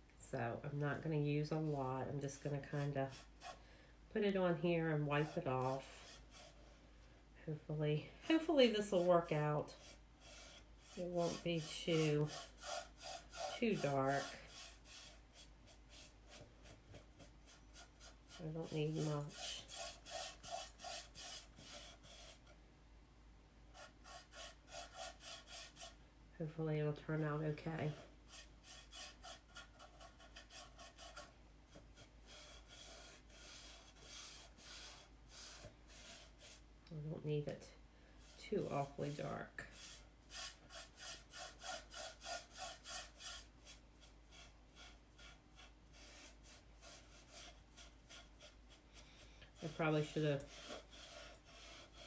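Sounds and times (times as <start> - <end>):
rubbing on wooden board: 8.8 - 22.5, 23.8 - 26.0, 27.9 - 36.6, 38.6 - 49.0, 49.6 - 52.0.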